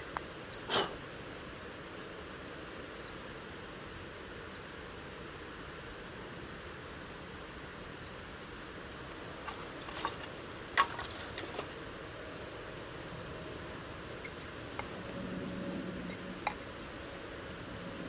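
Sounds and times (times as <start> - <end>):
steady hiss: 0.0 - 18.0.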